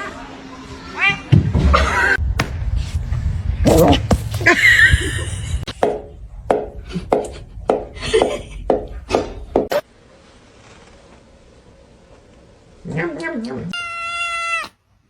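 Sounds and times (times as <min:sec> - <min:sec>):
short sharp knocks: 0:02.4 - 0:02.6.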